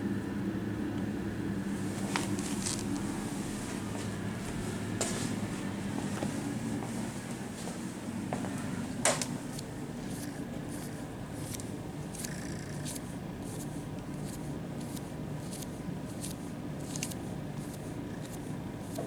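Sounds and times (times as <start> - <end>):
kitten purring: 10.2 - 13.0, 17.7 - 19.0.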